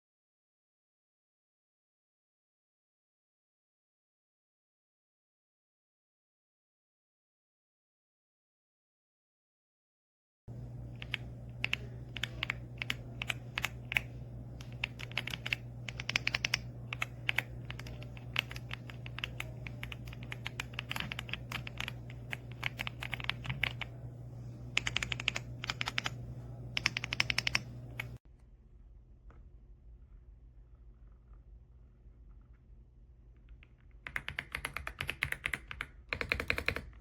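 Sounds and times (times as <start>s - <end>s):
steady low hum: 10.5s - 34.1s
mechanical keyboard key clicks: 11.0s - 23.9s, 24.8s - 26.1s.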